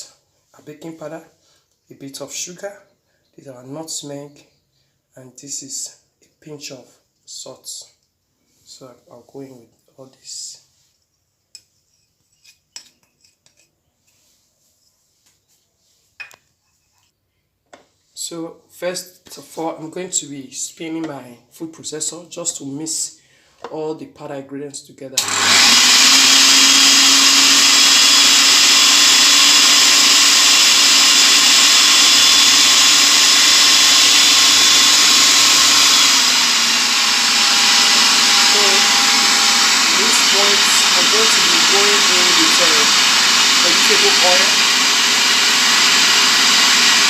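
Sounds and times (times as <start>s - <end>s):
food processor running: 25.2s - 47.0s.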